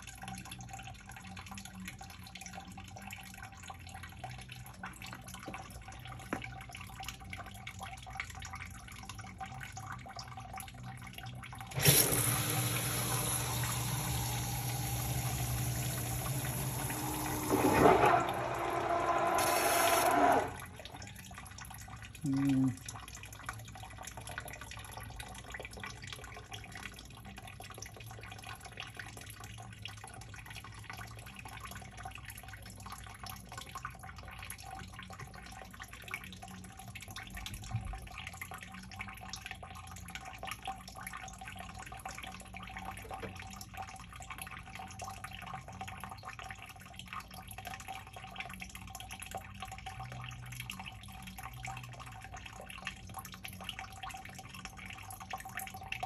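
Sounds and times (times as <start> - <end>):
water trickling and dripping: 0.0 - 56.0.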